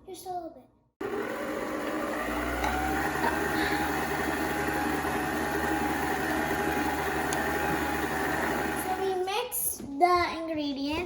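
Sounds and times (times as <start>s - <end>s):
electric stand mixer running: 1.0s - 9.3s.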